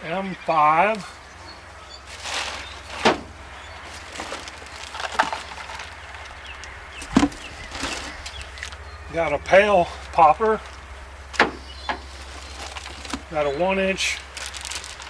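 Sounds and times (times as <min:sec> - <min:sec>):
packaging rustling: 0:02.1 - 0:08.8, 0:12.0 - 0:13.4, 0:14.0 - 0:15.0.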